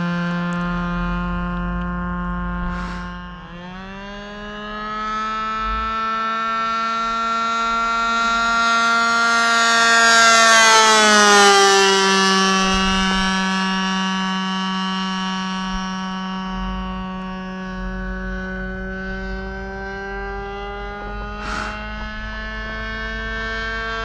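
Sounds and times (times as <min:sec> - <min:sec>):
model airplane engine buzzing: 0:00.0 - 0:24.0.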